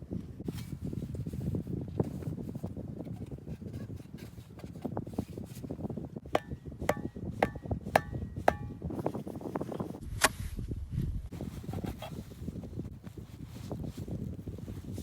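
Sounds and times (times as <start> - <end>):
hand tool striking with ring: 6.4 - 8.9.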